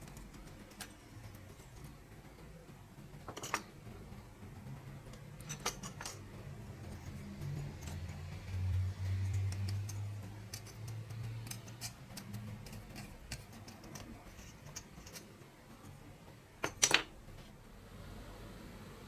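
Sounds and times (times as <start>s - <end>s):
clicks of small hard objects: 9.3s - 15.3s.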